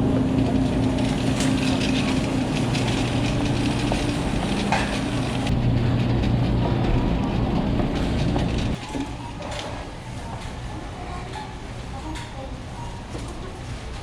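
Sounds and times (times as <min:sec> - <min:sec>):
vehicle engine rumbling: 0:00.0 - 0:08.8.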